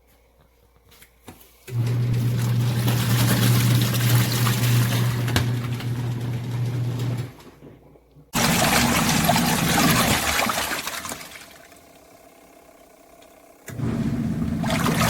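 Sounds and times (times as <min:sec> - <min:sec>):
washing machine motor hum: 0:01.7 - 0:15.0
water churning and splashing: 0:02.0 - 0:07.3, 0:08.4 - 0:11.8, 0:13.8 - 0:15.0.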